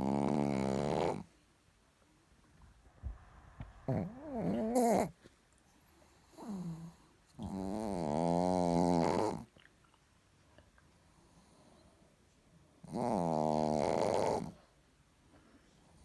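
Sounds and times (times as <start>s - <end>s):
dog snoring: 0.0s - 1.3s, 3.8s - 5.2s, 6.2s - 9.5s, 12.8s - 14.6s.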